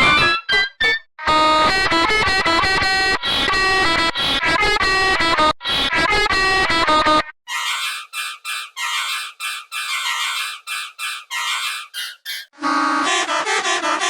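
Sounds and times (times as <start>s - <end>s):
bus horn playing a tune: 7.5s - 12.1s.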